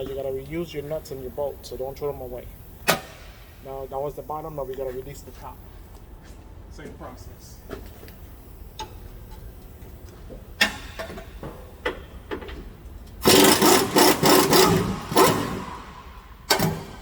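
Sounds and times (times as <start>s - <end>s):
ratchet wrench rasping: 13.2s - 15.8s
wrench clicking: 13.2s - 15.8s.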